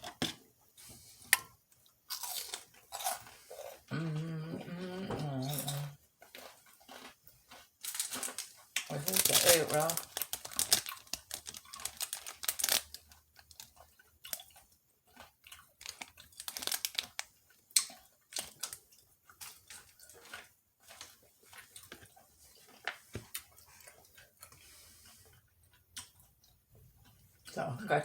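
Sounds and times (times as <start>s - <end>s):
crunchy chewing: 0.8s - 27.6s.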